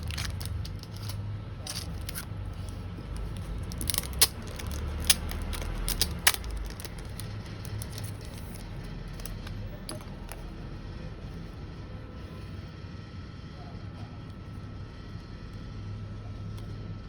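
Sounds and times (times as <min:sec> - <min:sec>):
packaging clicks and crinkles: 0:00.0 - 0:10.6
low steady hum: 0:00.0 - 0:17.0.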